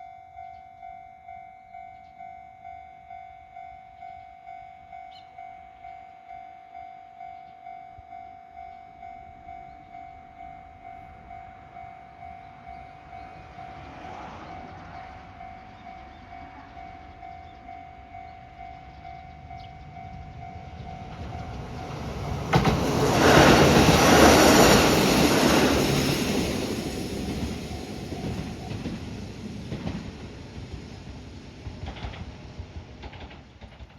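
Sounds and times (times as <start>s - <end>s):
level crossing warning bell: 0.0s - 29.4s
diesel train passing: 0.0s - 33.9s
train wheel and rail noise: 0.0s - 33.9s.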